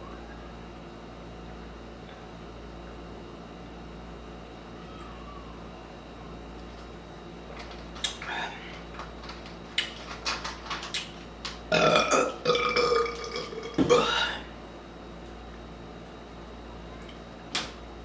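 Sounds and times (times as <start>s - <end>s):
person burping loudly: 11.7s - 14.5s.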